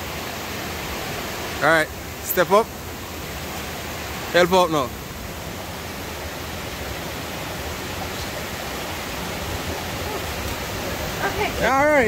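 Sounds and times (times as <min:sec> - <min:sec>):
river rushing: 0:00.0 - 0:12.0.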